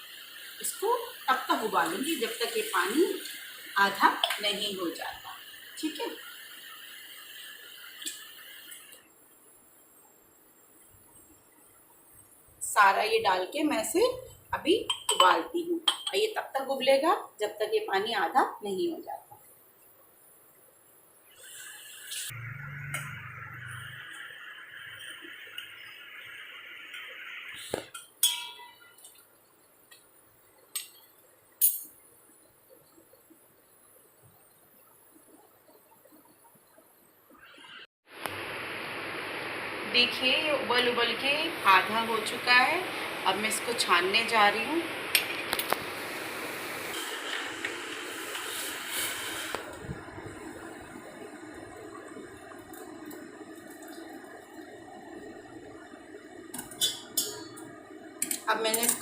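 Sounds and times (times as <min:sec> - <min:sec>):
steady hiss: 0:00.0 - 0:17.0, 0:18.0 - 0:22.6, 0:23.4 - 0:58.6
metal utensils clinking: 0:28.0 - 0:29.2, 0:56.6 - 0:57.6, 0:58.2 - 0:59.0.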